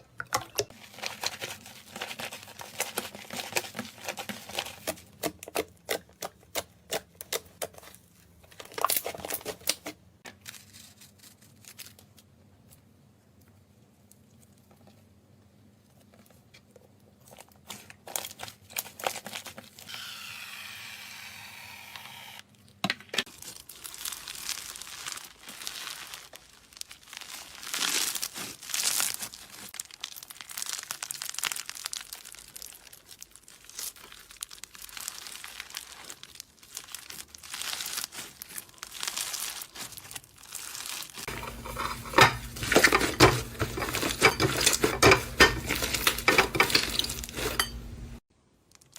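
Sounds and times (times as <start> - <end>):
slime crackling by hand: 23.4 - 42.7.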